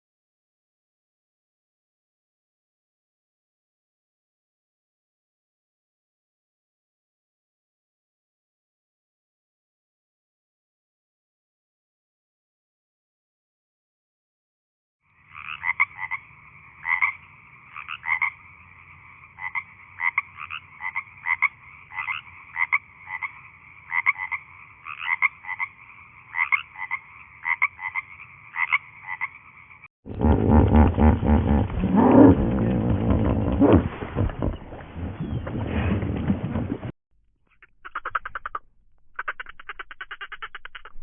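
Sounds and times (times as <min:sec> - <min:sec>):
frog croaking: 0:15.1 - 0:29.9, 0:37.4 - 0:41.0
deep animal call: 0:30.1 - 0:35.6, 0:37.5 - 0:41.0.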